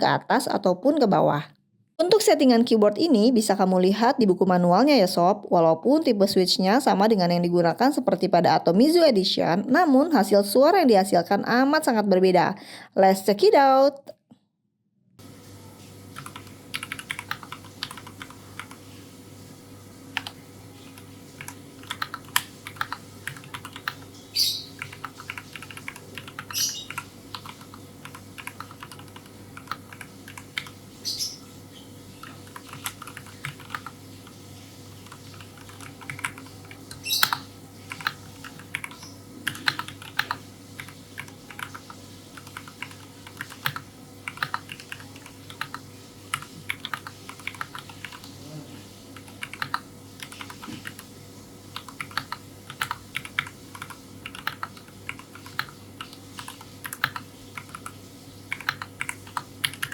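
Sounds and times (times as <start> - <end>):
mechanical keyboard keystroke clacks: 21.4 - 24.0, 35.1 - 48.3.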